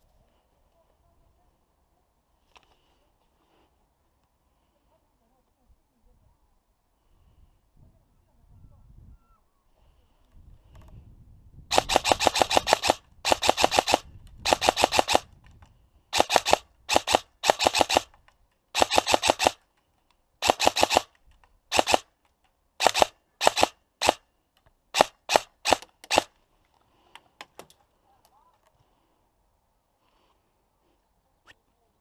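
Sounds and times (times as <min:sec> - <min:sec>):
airsoft gun firing bursts: 0:11.7 - 0:15.3, 0:16.1 - 0:19.6, 0:20.4 - 0:22.1, 0:22.8 - 0:24.2, 0:24.9 - 0:26.3.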